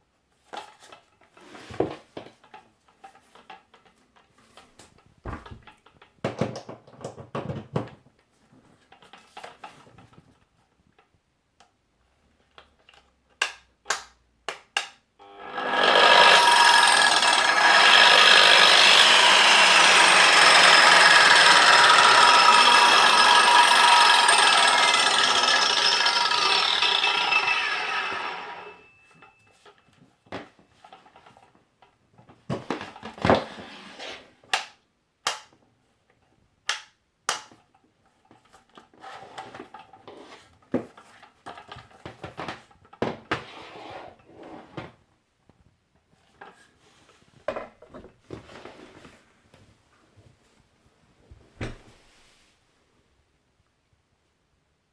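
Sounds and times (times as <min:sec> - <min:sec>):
angle grinder whining: 0:15.2 - 0:29.0.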